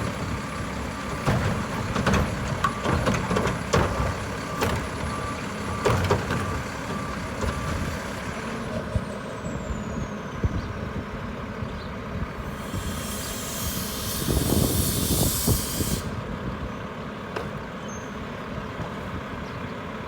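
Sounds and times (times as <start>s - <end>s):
diesel truck engine running: 0.0s - 20.0s
backup alarm beeping: 3.9s - 8.4s.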